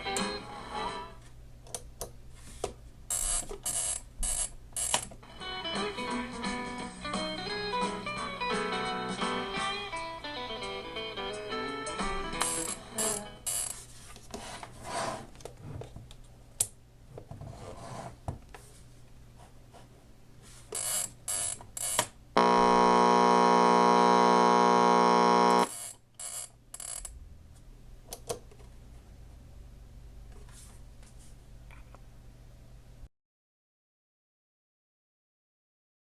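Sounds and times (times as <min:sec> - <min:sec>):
alarm clock buzzer: 0:03.1 - 0:04.9, 0:22.4 - 0:27.0.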